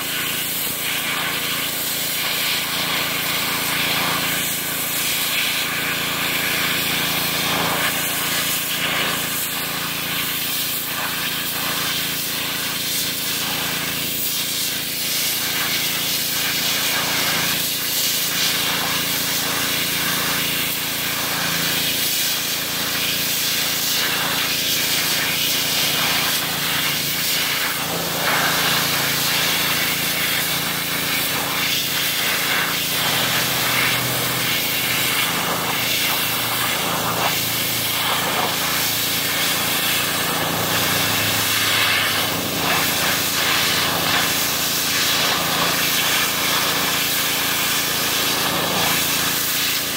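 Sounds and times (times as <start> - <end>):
pressure washer jet hissing: 0.0 - 49.9
pressure washer motor humming: 0.0 - 49.9.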